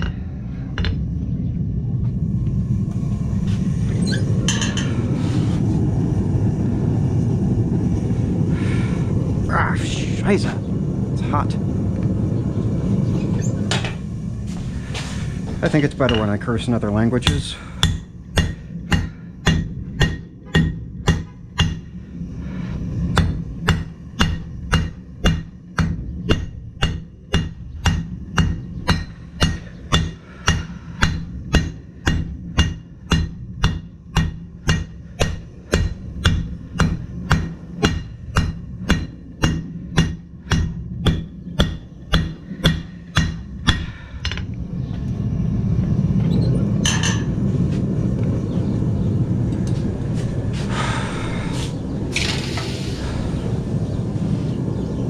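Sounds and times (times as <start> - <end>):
low rumble: 0.0 - 55.0
hammer striking steel on anvil: 16.0 - 16.6, 17.2 - 22.0, 23.1 - 44.5.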